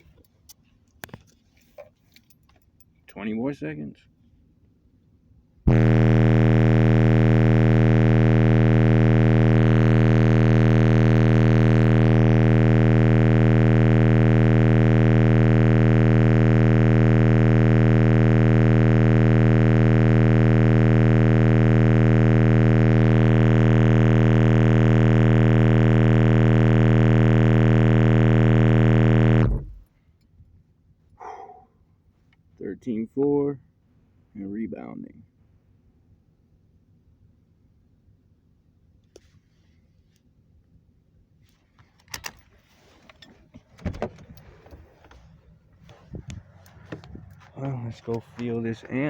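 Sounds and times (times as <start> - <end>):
buzzy bass test tone: 5.7 - 29.9.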